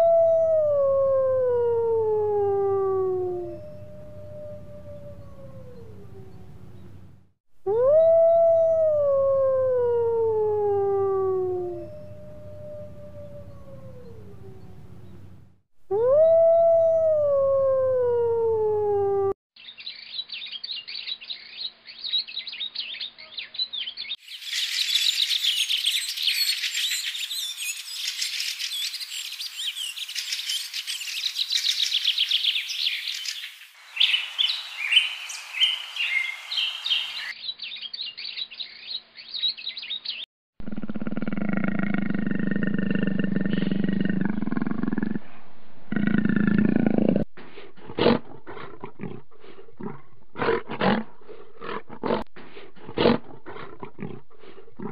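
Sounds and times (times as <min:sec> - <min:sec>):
long falling howl: 0:00.0 - 0:07.0, 0:07.7 - 0:19.4
low roar: 0:00.0 - 0:19.4, 0:40.6 - 0:54.9
dense bird chirping: 0:11.8 - 0:15.4, 0:19.6 - 0:40.2.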